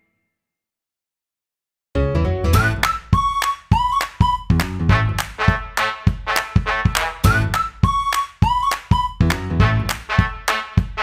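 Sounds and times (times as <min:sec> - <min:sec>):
upbeat music with brass: 0:02.2 - 0:11.0.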